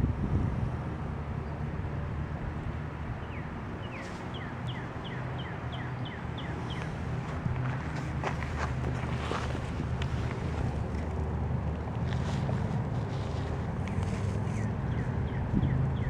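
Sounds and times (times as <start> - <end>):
bird singing down-slurred notes: 3.2 - 7.0, 14.6 - 16.0
steady low rumble: 5.8 - 16.0.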